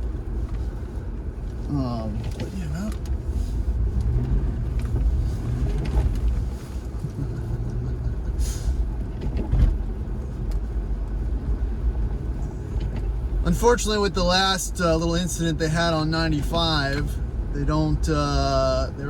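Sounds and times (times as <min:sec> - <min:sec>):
tyre noise on wet road: 0:00.0 - 0:14.0
car engine running: 0:00.0 - 0:19.0.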